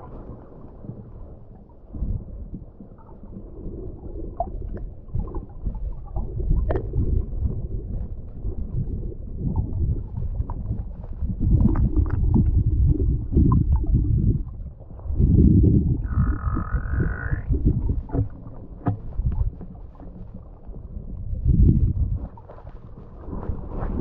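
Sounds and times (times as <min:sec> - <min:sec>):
muffled underwater gurgling water: 0:00.0 - 0:24.0.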